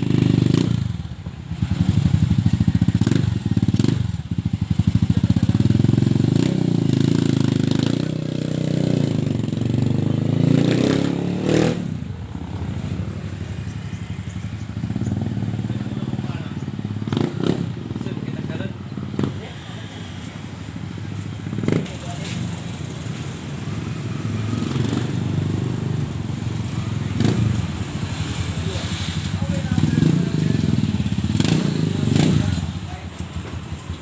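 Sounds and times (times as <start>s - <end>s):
motorcycle engine running: 0.0s - 19.4s.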